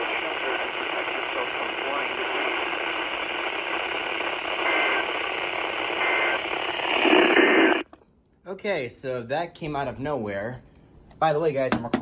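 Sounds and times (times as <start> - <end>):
radio static hiss: 0.0 - 7.9.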